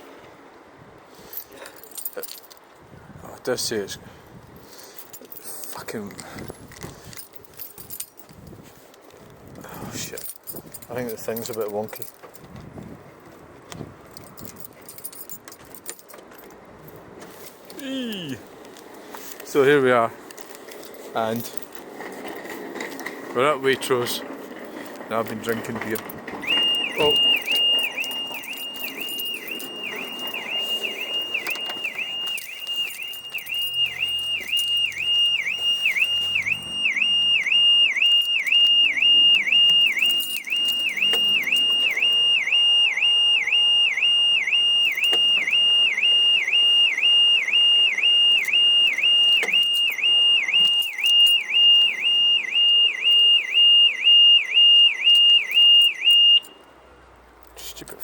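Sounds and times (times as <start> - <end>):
car alarm: 26.3 - 56.7.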